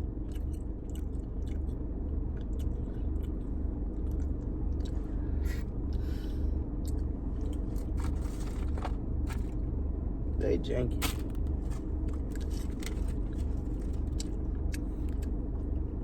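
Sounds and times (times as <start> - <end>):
low steady hum: 0.0 - 16.0
person chewing: 0.1 - 5.2, 6.8 - 9.5, 11.1 - 15.3.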